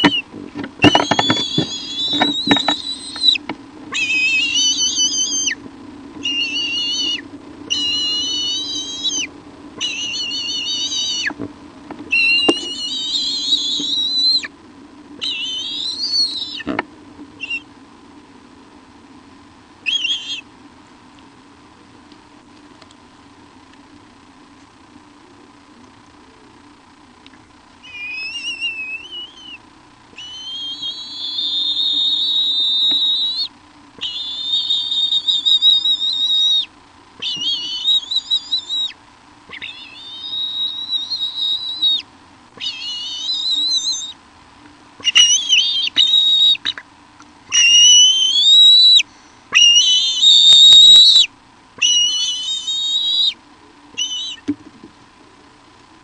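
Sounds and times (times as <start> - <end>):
high wavering whistling: 0.0 - 5.6, 6.2 - 11.4, 12.1 - 14.6, 15.2 - 16.7, 17.4 - 17.8, 19.8 - 20.5, 27.8 - 44.2, 45.0 - 46.8, 47.5 - 54.5
faint electrical hum: 0.0 - 56.0.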